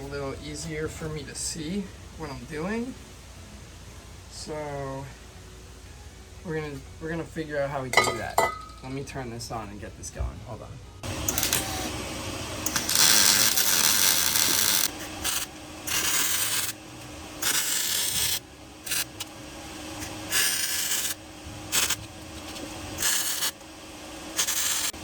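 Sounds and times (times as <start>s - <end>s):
welding arc crackling: 11.0s - 25.0s.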